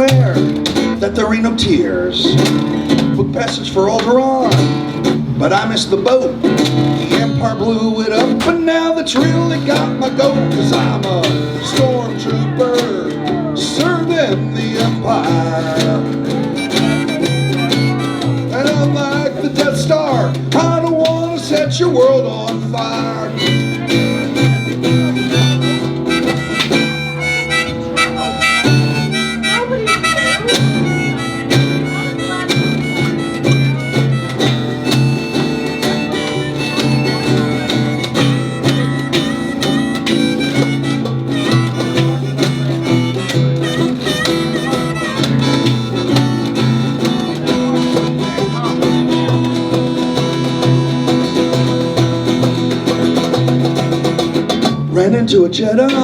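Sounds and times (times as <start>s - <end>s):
lead melody: 15.1s - 19.6s, 22.8s - 54.6s.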